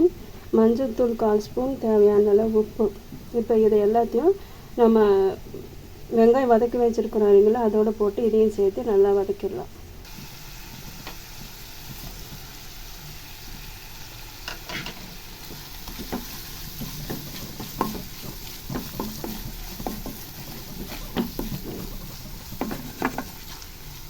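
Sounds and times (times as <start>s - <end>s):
food sizzling in oil: 10.0s - 24.0s
spoon scraping and tapping pan: 14.4s - 24.0s.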